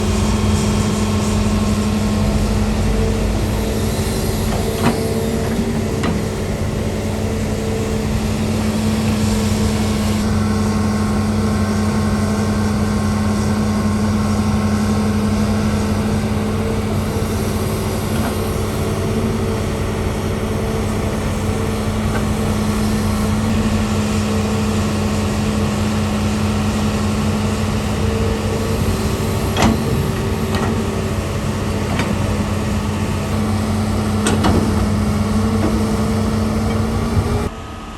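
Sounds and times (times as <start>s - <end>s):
excavator diesel engine running: 0.0s - 37.9s
metal clanks: 29.5s - 31.0s.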